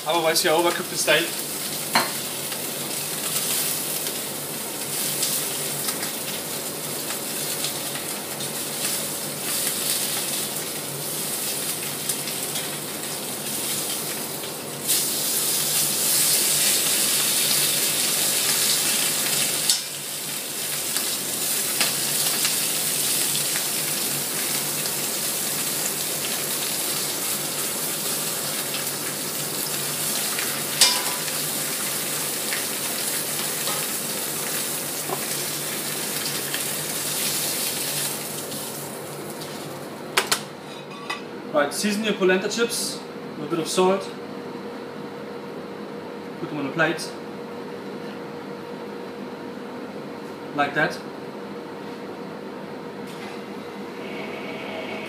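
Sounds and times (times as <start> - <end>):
steak sizzling in a pan: 1.2 - 39.8.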